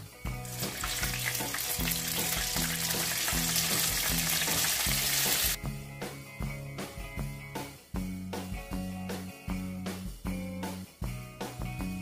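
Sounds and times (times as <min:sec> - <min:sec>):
background music with bass: 0:00.0 - 0:12.0
chicken wings sizzling in oil: 0:00.4 - 0:05.6.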